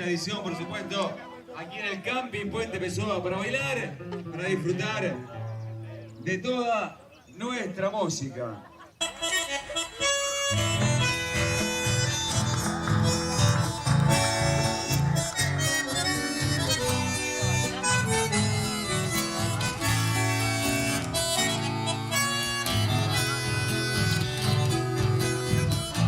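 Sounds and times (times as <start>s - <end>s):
guitar: 2.0s - 6.5s, 9.0s - 26.0s
accordion melody: 9.0s - 26.0s
rhythmic bass line: 9.0s - 26.0s.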